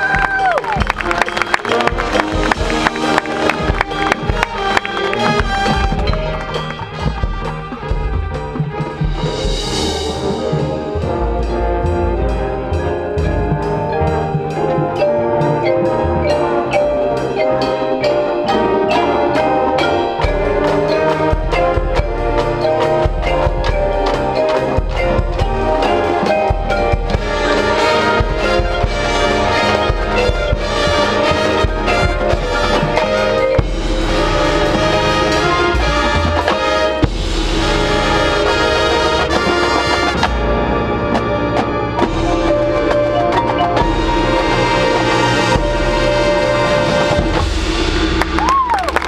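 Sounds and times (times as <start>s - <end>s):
drums: 0.0s - 49.0s
mallet percussion: 0.0s - 49.0s
marching band playing: 0.0s - 49.0s.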